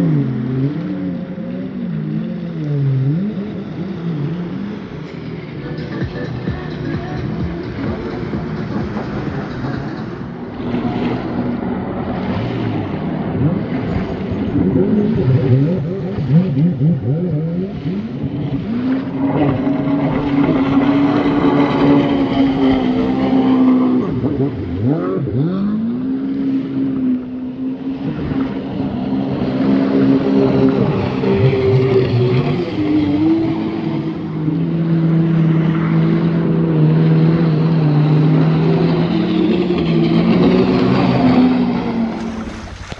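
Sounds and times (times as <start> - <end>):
jet ski engine revving: 0.0 - 42.9
water rushing: 0.0 - 42.9
wind: 0.0 - 42.9.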